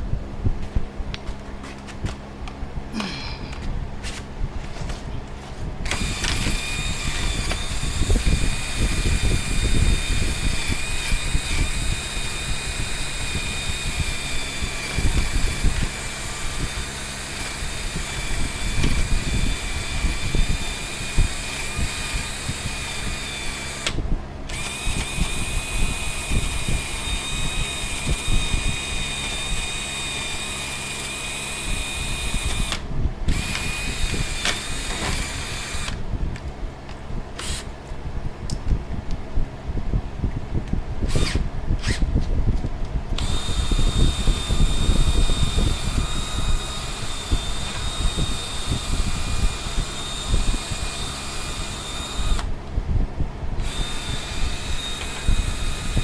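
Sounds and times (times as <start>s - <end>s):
power drill whining: 5.8s - 36.0s, 37.4s - 37.7s, 41.1s - 42.1s, 43.2s - 52.6s, 53.6s - 56.0s.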